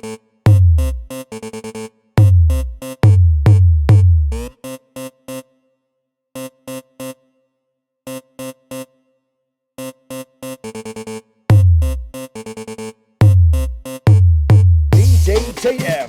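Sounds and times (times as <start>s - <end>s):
chopped synth stabs: 0.5s - 1.1s, 2.2s - 4.5s, 11.5s - 12.1s, 13.2s - 16.0s
electronic dance music: 0.5s - 1.1s, 2.2s - 4.5s, 11.5s - 12.2s, 13.2s - 16.0s
heavy bass booms: 2.2s - 4.4s, 13.2s - 15.6s.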